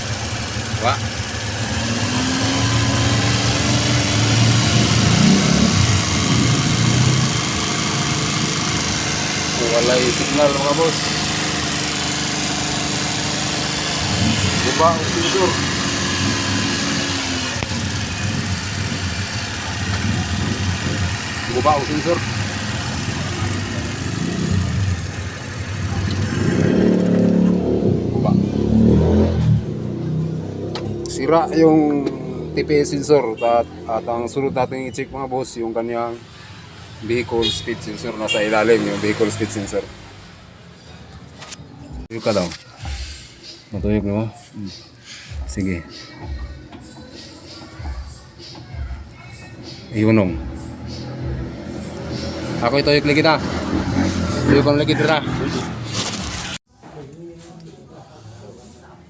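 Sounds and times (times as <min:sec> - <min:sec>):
van engine idling: 0:00.0 - 0:26.2.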